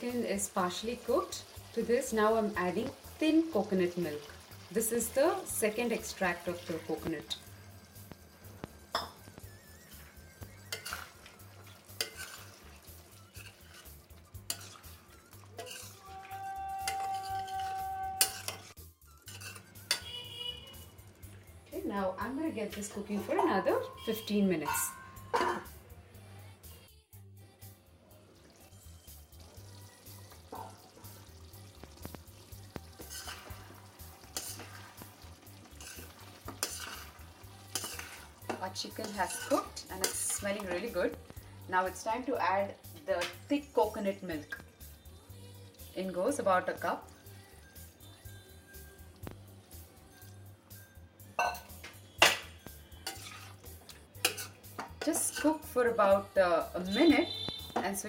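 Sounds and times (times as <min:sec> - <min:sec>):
light sizzle: 0:00.0 - 0:25.4, 0:27.4 - 0:58.0
spoon scraping a pan: 0:09.9 - 0:20.6, 0:32.8 - 0:41.3, 0:51.4 - 0:55.8.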